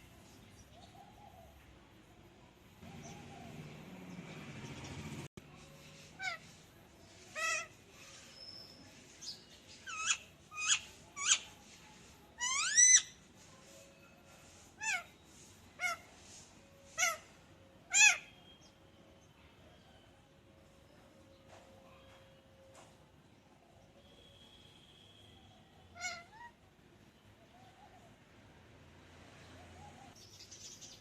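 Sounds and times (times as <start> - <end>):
parrot squawking and whistling: 12.4 - 13.1.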